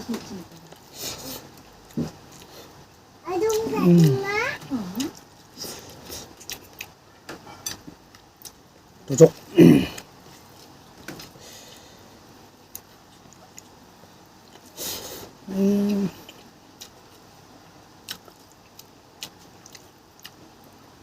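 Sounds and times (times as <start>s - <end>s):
person chewing: 5.0s - 7.0s, 12.7s - 13.8s, 15.8s - 17.3s, 18.0s - 20.8s
person humming mm: 15.4s - 16.3s.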